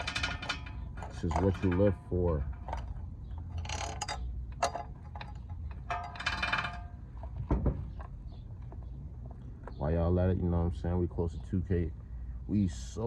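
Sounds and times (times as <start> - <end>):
dull thump: 7.4 - 7.9.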